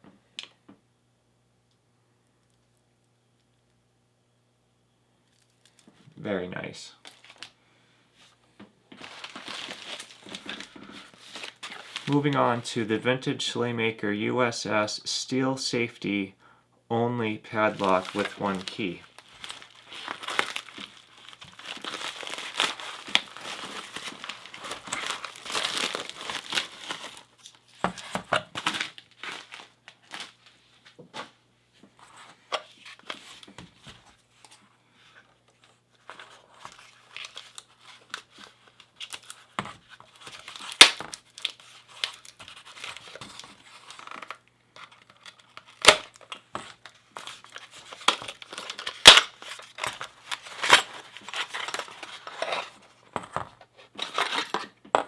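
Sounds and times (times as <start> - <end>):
packaging crinkling and tearing: 7.0 - 7.5, 8.9 - 12.6, 17.6 - 30.5, 36.0 - 53.0.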